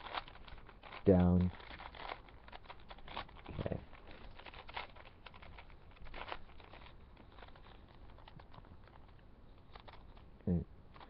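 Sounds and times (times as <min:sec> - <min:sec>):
puzzle cube clicking and rattling: 0:00.0 - 0:11.0.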